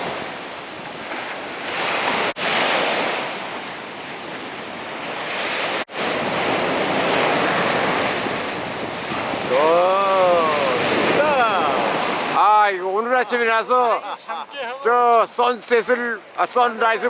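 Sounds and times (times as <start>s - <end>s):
sea waves breaking on a beach: 0.0s - 17.0s.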